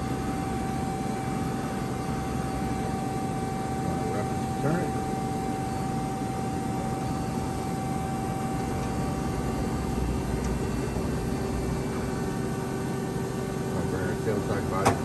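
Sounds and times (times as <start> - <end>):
machine whine: 0.0 - 15.0.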